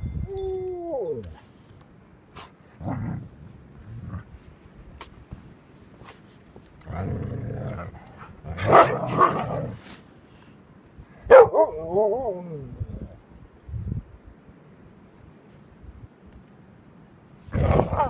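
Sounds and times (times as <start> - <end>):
dog barking: 8.6 - 9.6, 11.3 - 11.8.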